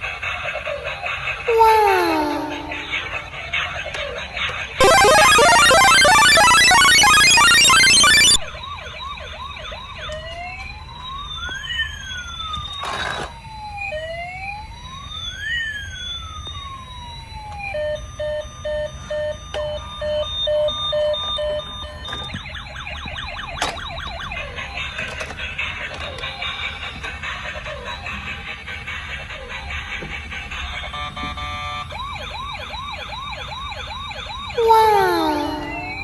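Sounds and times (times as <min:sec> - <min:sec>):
toy electronic siren: 0:01.5 - 0:03.3, 0:04.8 - 0:12.4, 0:17.5 - 0:25.7, 0:30.8 - 0:36.0.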